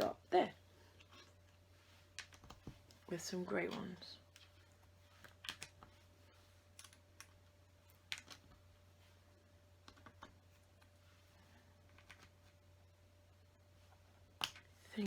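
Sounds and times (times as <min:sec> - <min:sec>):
faint steady hum: 0:00.0 - 0:15.0
plastic pieces clicking: 0:05.2 - 0:05.9, 0:08.0 - 0:08.5.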